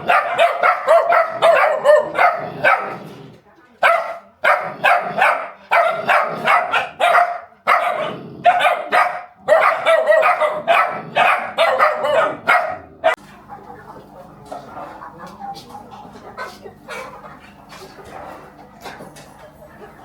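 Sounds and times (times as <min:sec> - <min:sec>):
dog barking rapidly: 0:00.0 - 0:03.0, 0:03.8 - 0:13.2.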